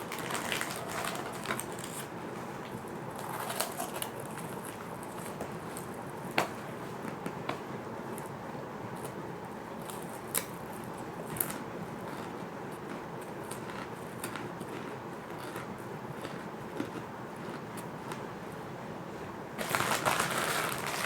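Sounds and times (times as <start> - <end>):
crackers crunching being chewed: 0.0 - 6.0, 9.8 - 18.2, 19.6 - 21.0.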